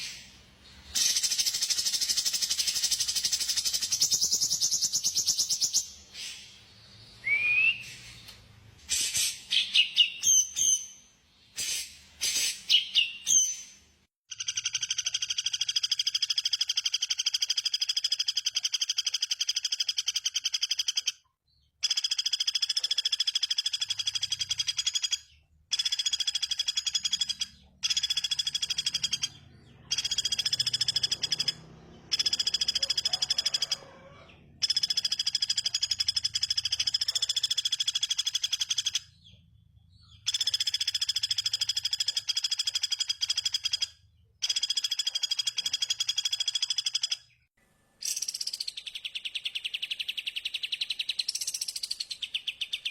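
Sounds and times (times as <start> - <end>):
small bird trilling: 21.8 - 39.3.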